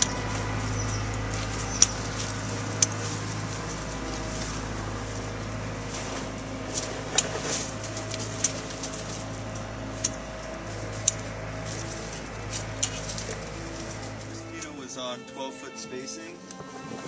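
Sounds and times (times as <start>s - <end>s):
machine hum: 0.0s - 17.0s.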